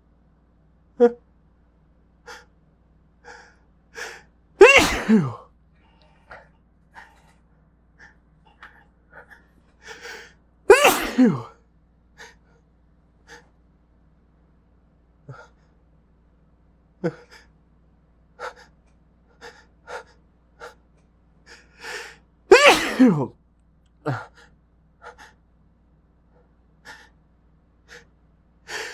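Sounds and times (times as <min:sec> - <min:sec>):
man sneezing: 0:04.6 - 0:05.5, 0:09.2 - 0:11.6, 0:22.5 - 0:23.3, 0:24.1 - 0:24.5
quiet breaths and sniffs: 0:05.8 - 0:10.4.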